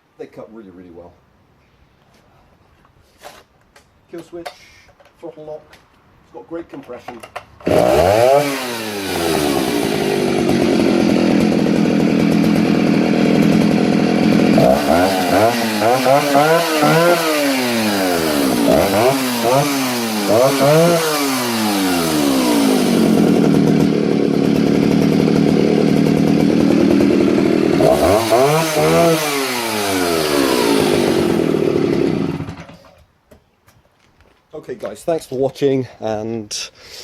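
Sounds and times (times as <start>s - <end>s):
chainsaw engine revving and idling: 7.6s - 33.0s.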